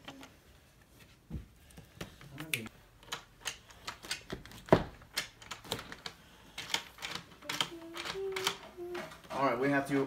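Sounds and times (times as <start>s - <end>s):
door lock clicking and knocking: 3.0s - 8.6s.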